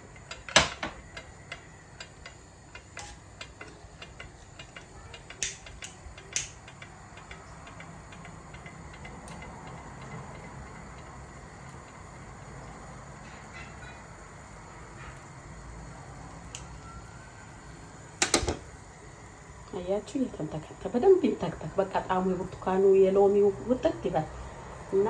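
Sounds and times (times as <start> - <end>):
pot boiling with hiss: 0.0 - 25.0
small ticks and pops: 0.2 - 19.3.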